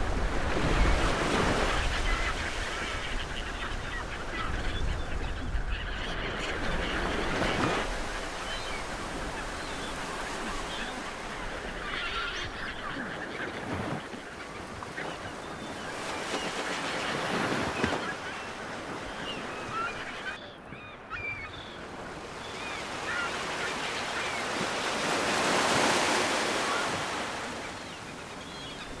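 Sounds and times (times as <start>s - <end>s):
ocean surf waves: 0.0s - 4.5s, 6.3s - 20.4s, 21.8s - 29.0s
birds calling: 0.1s - 29.0s.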